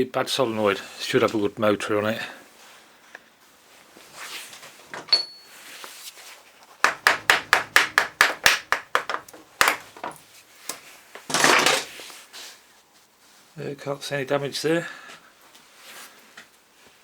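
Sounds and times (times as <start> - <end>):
sharp metal taps: 6.9 - 10.1
single knocks: 6.9 - 10.2.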